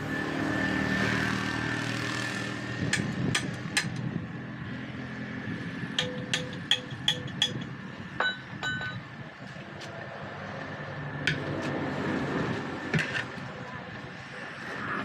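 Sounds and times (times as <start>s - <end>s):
metal tools clinking on metal: 6.0s - 9.1s.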